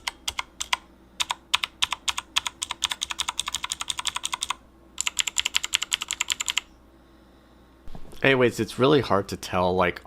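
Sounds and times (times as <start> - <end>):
clicky mechanical keyboard typing: 0.0 - 6.7.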